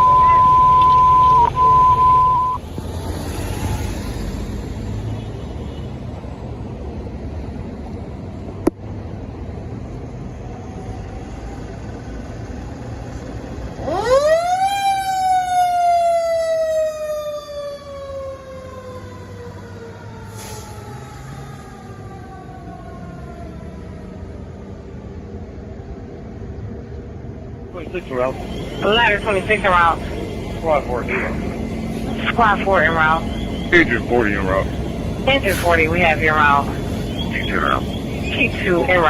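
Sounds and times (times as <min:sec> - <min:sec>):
fire engine siren: 0:00.0 - 0:02.6, 0:10.5 - 0:24.8, 0:27.8 - 0:39.0
radio alert tone: 0:00.0 - 0:02.6, 0:27.8 - 0:39.0.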